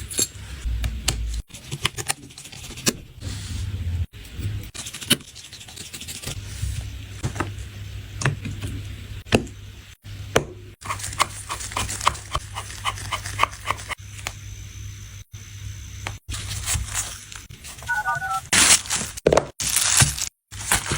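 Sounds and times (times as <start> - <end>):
steady low hum: 0.3 - 1.6, 3.0 - 4.7.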